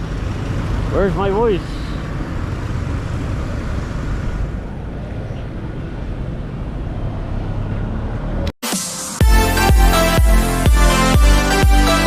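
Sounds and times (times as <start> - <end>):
road traffic rumble: 0.0 - 8.6.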